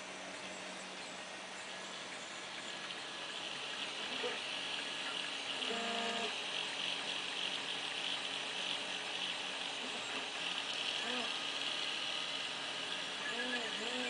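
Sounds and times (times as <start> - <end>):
stepper motors whining: 1.6 - 14.0
short pitched motor tone: 5.5 - 6.5, 10.9 - 11.5, 13.0 - 14.0.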